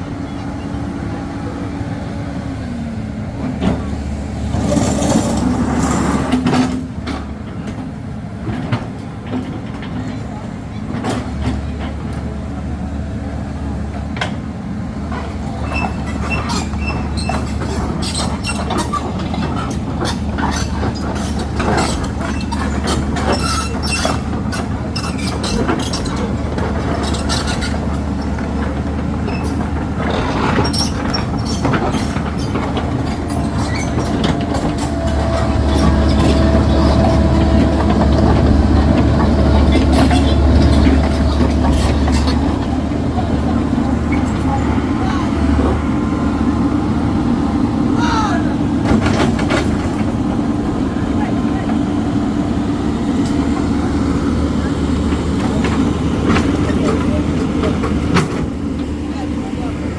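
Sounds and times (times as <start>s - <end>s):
diesel excavator engines: 0.0s - 59.9s
metal clanks and scraping: 4.5s - 7.3s, 15.1s - 44.8s, 48.8s - 50.2s.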